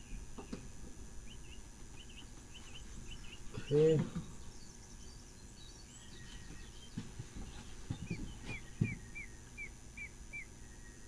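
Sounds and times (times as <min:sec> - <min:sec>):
bird chirping: 0:00.0 - 0:11.0
soft low thumps: 0:06.4 - 0:09.3.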